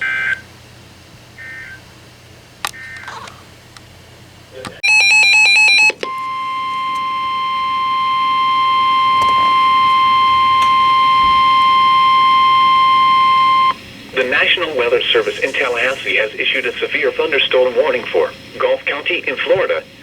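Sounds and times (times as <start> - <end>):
warbling digital header tones: 4.8 - 18.2
steady warning alarm tone: 4.8 - 20.0.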